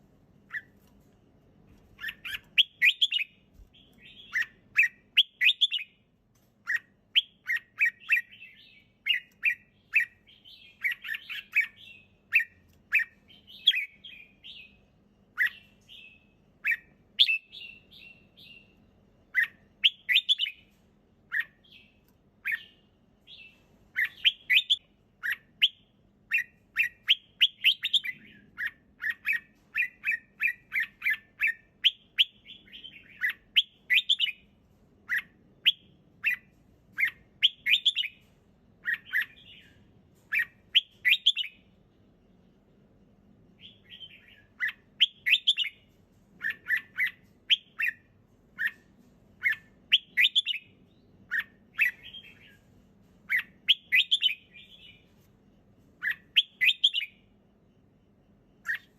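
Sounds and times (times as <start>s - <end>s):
bird singing chirping phrases: 2.0s - 6.0s, 6.6s - 20.7s, 21.3s - 34.5s, 35.1s - 41.8s, 43.6s - 52.7s, 53.3s - 55.2s, 56.0s - 57.3s, 58.5s - 58.9s.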